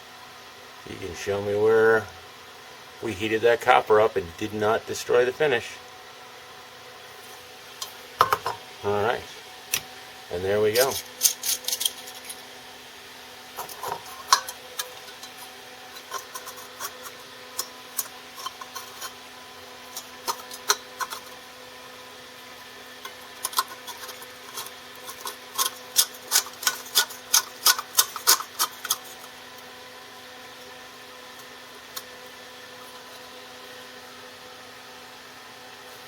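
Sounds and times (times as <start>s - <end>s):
faint steady hum: 0.0s - 36.0s
small metal parts clicking: 10.8s - 12.4s, 23.4s - 29.3s.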